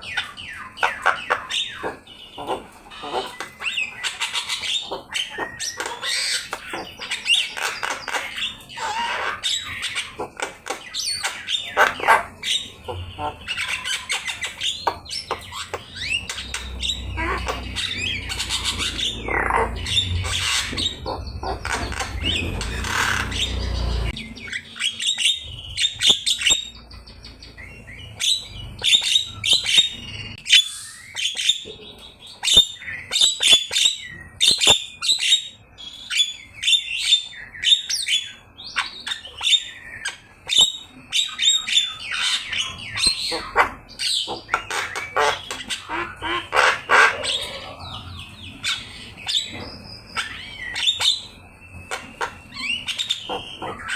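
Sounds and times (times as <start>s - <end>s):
bird chattering and squawking: 0.0s - 53.9s
low rumble: 16.0s - 24.5s.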